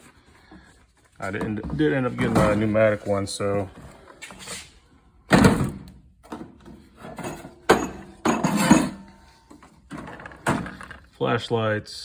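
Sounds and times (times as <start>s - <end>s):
tools clinking in a drawer: 7.0s - 9.2s.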